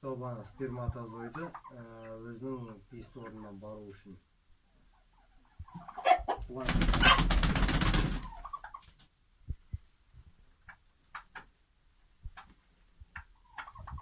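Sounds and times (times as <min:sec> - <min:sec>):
hen clucking: 0:00.1 - 0:09.1, 0:10.7 - 0:11.6, 0:12.3 - 0:14.0
hen squawking: 0:05.7 - 0:07.4.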